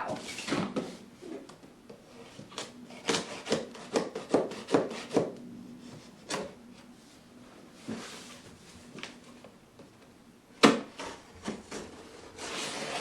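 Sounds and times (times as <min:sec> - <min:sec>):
knife slicing cardboard and tape: 0:02.6 - 0:05.3.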